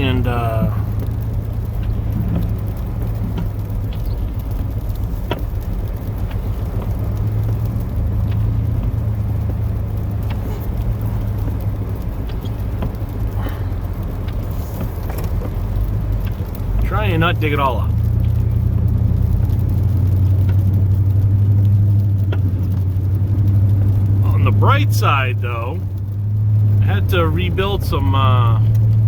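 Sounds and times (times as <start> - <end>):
truck engine droning: 0.0 - 29.0
faint clicks: 0.6 - 16.9, 17.9 - 24.6.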